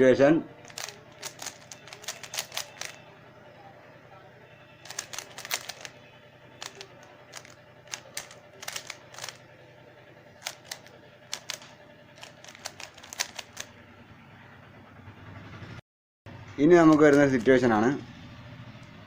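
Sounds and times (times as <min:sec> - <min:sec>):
puzzle cube layers clicking: 0:00.7 - 0:03.0, 0:04.9 - 0:05.9, 0:06.6 - 0:09.4, 0:10.4 - 0:13.7.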